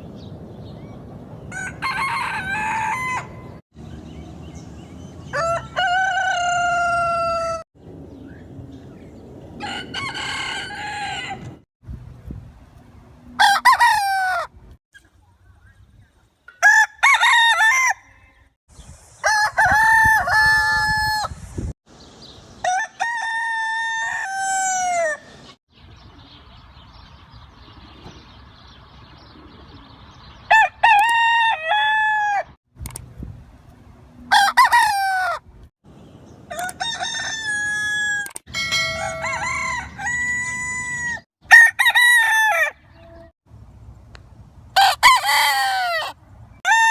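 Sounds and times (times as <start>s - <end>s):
roosters crowing: 1.4s - 3.6s, 5.2s - 7.7s, 9.5s - 11.6s, 13.3s - 14.6s, 16.6s - 18.6s, 19.2s - 21.4s, 22.6s - 25.6s, 30.5s - 32.6s, 34.2s - 35.5s, 36.4s - 43.3s, 44.8s - 46.9s.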